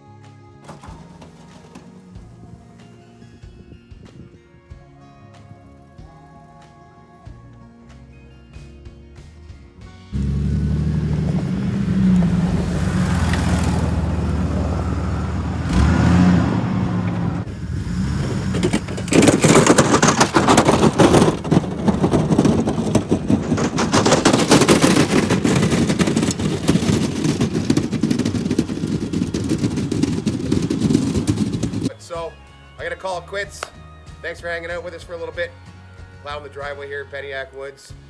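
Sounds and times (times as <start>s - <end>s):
rough rattling noise: 0.6s - 2.2s, 10.2s - 31.9s
engine running under load: 10.2s - 31.9s.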